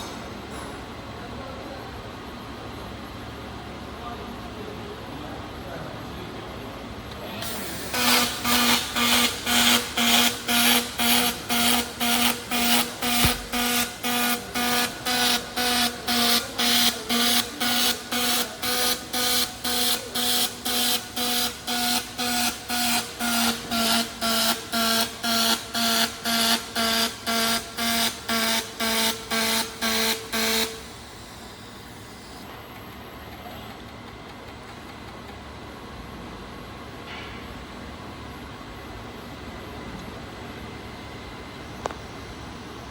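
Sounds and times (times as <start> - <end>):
machine hum and hiss: 0.0 - 42.9
welding arc buzzing in pulses: 7.4 - 32.4.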